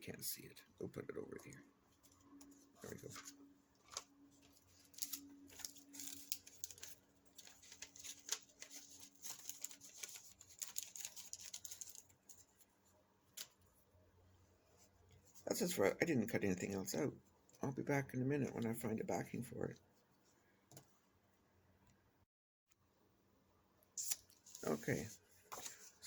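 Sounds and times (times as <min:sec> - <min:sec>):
paper rustling: 0:01.9 - 0:13.8, 0:24.0 - 0:26.0.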